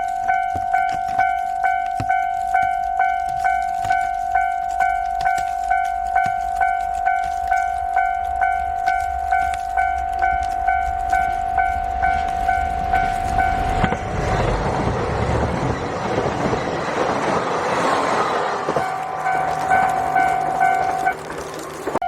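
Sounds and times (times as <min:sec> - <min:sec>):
level crossing bell dinging: 0:00.0 - 0:14.3, 0:18.7 - 0:22.0
diesel train passing: 0:07.0 - 0:22.0.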